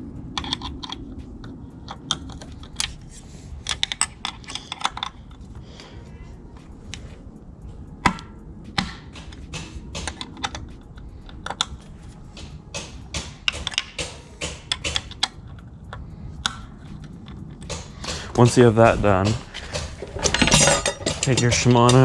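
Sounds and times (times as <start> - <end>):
hex key clicking on bolts: 8.8 - 18.4.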